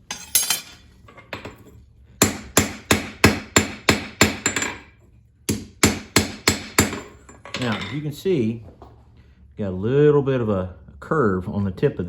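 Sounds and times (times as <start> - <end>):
hammer striking hot steel on anvil: 2.2 - 4.9, 5.5 - 7.7.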